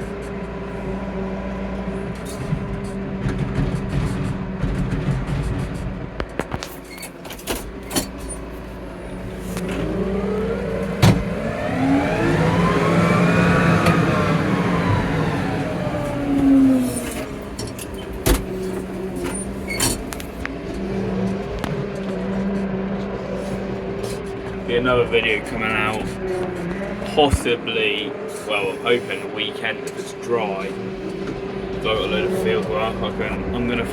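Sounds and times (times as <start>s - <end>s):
tractor engine running: 0.0s - 33.9s
knocks and rattles: 2.2s - 8.5s.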